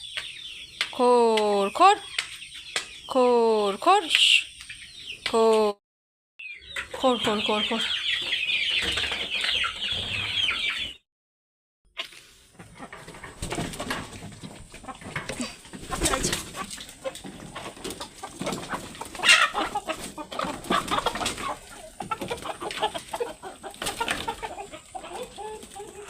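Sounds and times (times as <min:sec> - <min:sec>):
chickens clucking: 0:00.0 - 0:05.7, 0:06.4 - 0:11.0, 0:12.0 - 0:26.0
knocks and rustles: 0:12.0 - 0:18.9.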